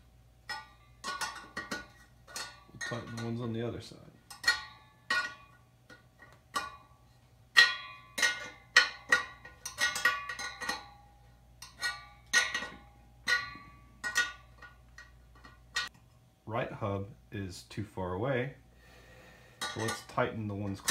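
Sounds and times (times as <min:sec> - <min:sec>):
spoke wrench clinking on spokes: 0:00.4 - 0:03.6, 0:04.2 - 0:16.1, 0:19.6 - 0:20.9.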